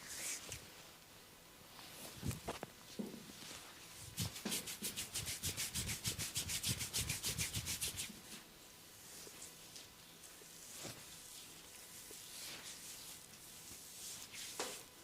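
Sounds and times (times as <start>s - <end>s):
hands rubbing briskly: 4.1s - 8.2s.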